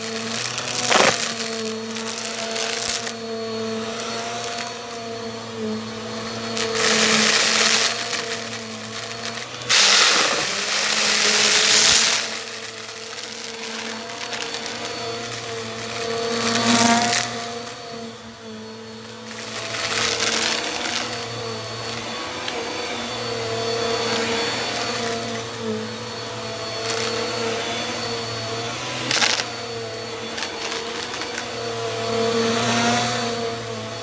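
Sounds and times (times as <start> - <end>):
vacuum cleaner motor hum: 0.0 - 34.0
rushing air noise: 9.5 - 15.1.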